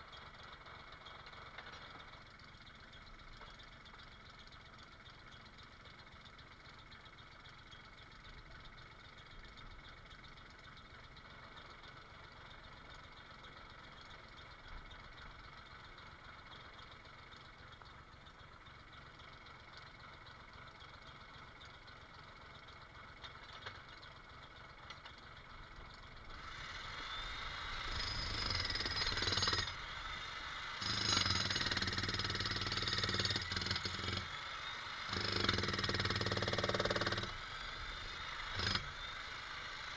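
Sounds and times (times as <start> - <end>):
faint engine rumble: 0.0 - 29.1
jackhammer hammering: 25.9 - 39.9.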